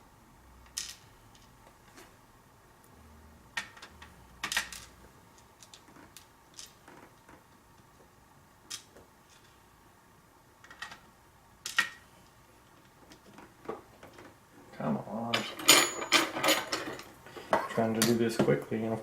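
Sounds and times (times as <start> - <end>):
lock parts clicking and tapping: 3.6 - 7.4
metal parts and tools knocking: 15.3 - 18.5.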